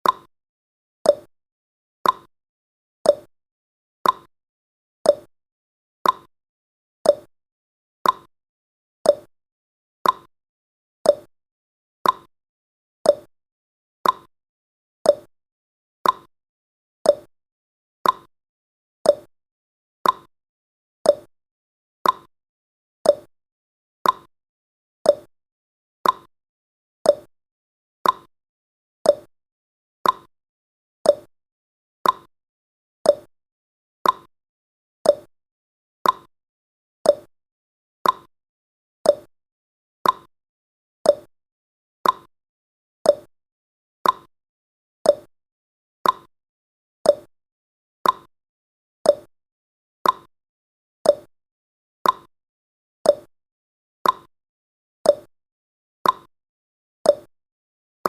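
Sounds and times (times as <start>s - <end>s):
clock ticking: 38.0s - 38.3s, 40.0s - 40.3s.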